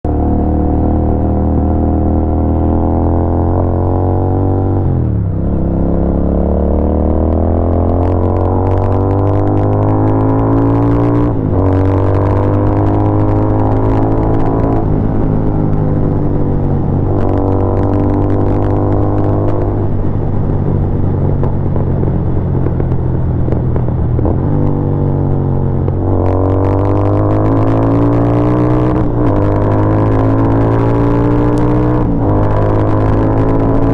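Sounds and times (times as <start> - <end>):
motorcycle engine revving: 0.0 - 33.9
exhaust crackles and pops: 6.7 - 33.9.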